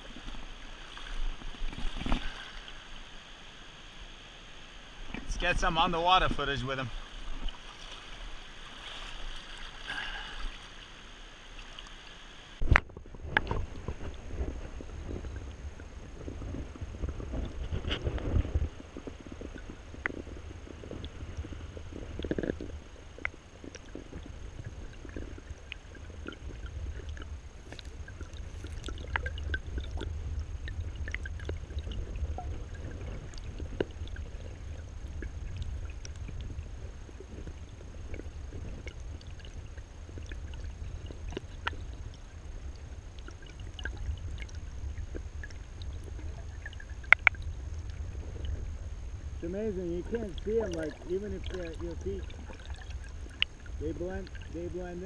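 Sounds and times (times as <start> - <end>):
underwater river rumble: 0.0 - 55.0
small clicks and ticks: 11.5 - 55.0.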